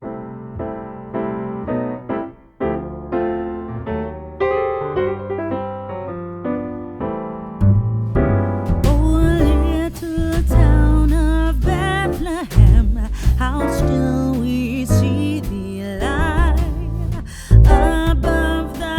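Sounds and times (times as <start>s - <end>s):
electric piano chords: 0.0s - 18.9s
heavy beat: 8.2s - 18.9s.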